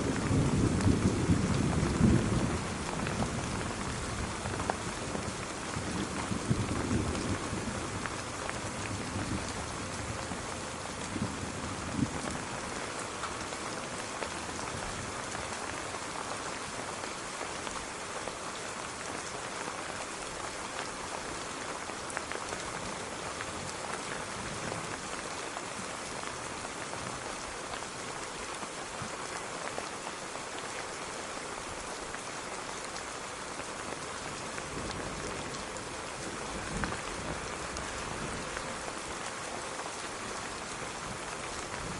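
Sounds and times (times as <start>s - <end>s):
steady rain pattering: 0.0s - 41.9s.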